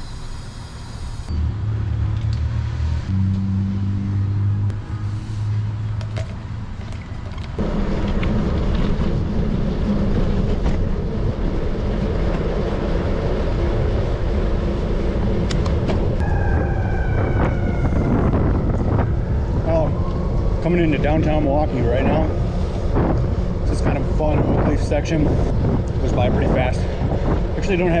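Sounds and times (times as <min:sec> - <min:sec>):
wind buffeting microphone: 0:07.2 - 0:28.0
falling horn-like tone: 0:16.2 - 0:22.5.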